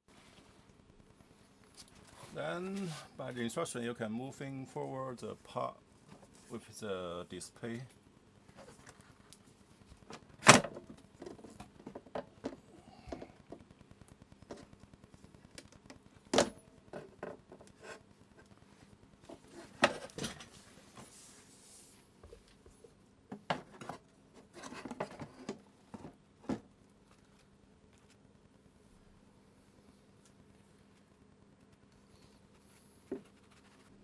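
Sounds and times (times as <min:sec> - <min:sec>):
plastic parts knocking and clicking: 0:10.1 - 0:13.7.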